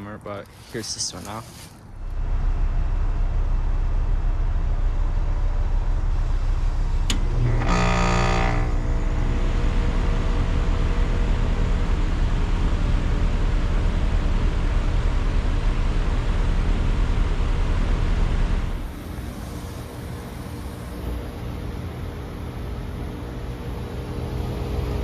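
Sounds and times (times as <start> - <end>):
heat pump low hum: 0.0 - 25.0
heat pump click: 7.0 - 8.8
loud buzz: 7.1 - 10.6.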